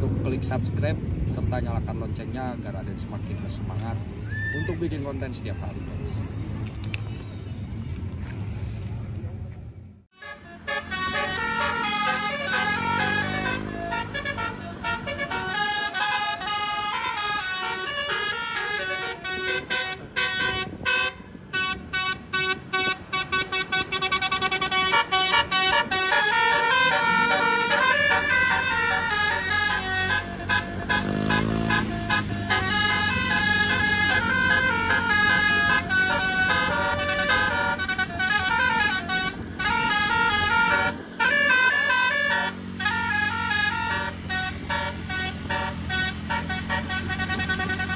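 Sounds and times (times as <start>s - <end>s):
multi-tone air horn melody: 10.1s - 47.9s.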